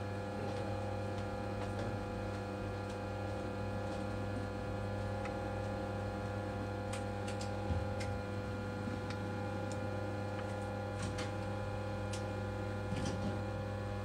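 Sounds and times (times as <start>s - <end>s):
machine hum: 0.0s - 14.0s.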